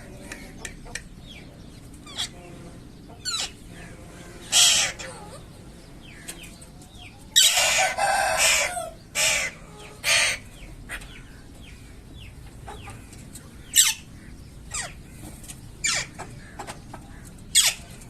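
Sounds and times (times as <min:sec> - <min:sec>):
parrot squawking: 0:03.2 - 0:03.6, 0:04.4 - 0:05.5, 0:07.4 - 0:11.0, 0:13.7 - 0:14.1, 0:14.7 - 0:15.0, 0:15.8 - 0:16.2, 0:17.5 - 0:17.9.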